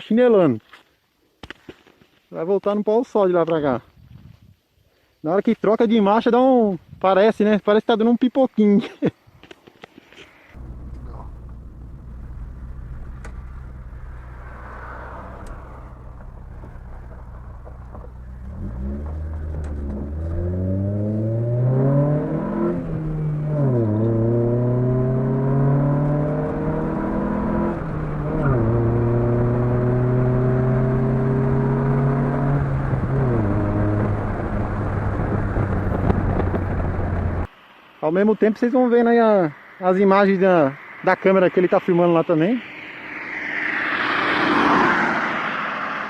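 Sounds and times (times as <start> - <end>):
car engine accelerating: 10.6 - 37.5.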